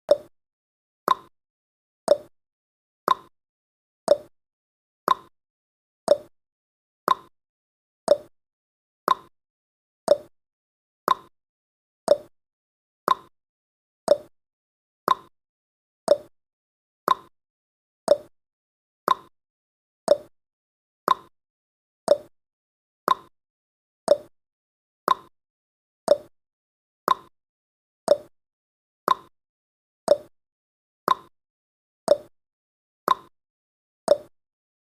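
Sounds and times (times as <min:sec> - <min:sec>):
timer ticking: 0:00.1 - 0:00.3, 0:01.1 - 0:01.3, 0:02.1 - 0:02.3, 0:03.1 - 0:03.3, 0:04.1 - 0:04.3, 0:05.1 - 0:05.3, 0:06.1 - 0:06.3, 0:07.1 - 0:07.3, 0:08.1 - 0:08.3, 0:09.1 - 0:09.3, 0:10.1 - 0:10.3, 0:11.1 - 0:11.3, 0:12.1 - 0:12.3, 0:13.1 - 0:13.3, 0:14.1 - 0:14.3, 0:15.1 - 0:15.3, 0:16.1 - 0:16.3, 0:17.1 - 0:17.3, 0:18.1 - 0:18.3, 0:19.1 - 0:19.3, 0:20.1 - 0:20.3, 0:21.1 - 0:21.3, 0:22.1 - 0:22.3, 0:23.1 - 0:23.3, 0:24.1 - 0:24.3, 0:25.1 - 0:25.3, 0:26.1 - 0:26.3, 0:27.1 - 0:27.3, 0:28.1 - 0:28.3, 0:29.1 - 0:29.3, 0:30.1 - 0:30.3, 0:31.1 - 0:31.3, 0:32.1 - 0:32.3, 0:33.1 - 0:33.3, 0:34.1 - 0:34.3.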